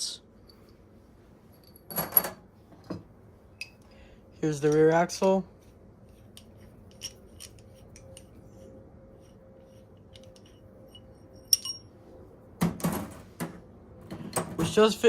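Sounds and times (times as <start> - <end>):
light metal clicks and clinks: 6.3 - 8.4, 10.1 - 11.9
ringing metallic clink: 10.2 - 11.9.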